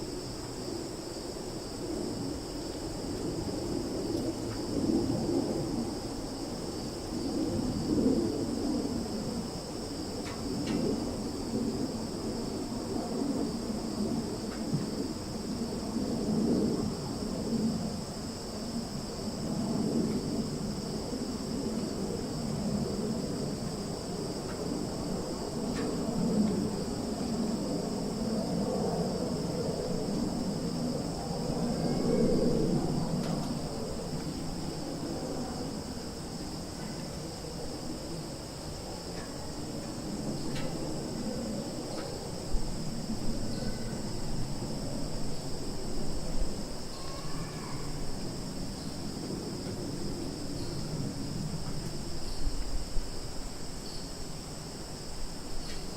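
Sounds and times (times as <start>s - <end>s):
crickets and insects chorus: 0.0s - 55.9s.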